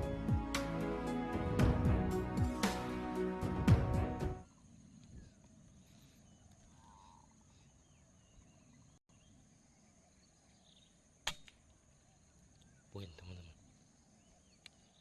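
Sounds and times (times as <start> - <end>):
birds chirping: 4.5 - 11.2.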